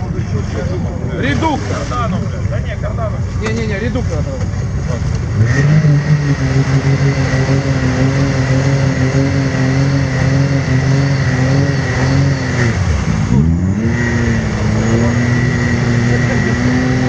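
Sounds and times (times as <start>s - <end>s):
engine revving high: 5.3s - 17.0s.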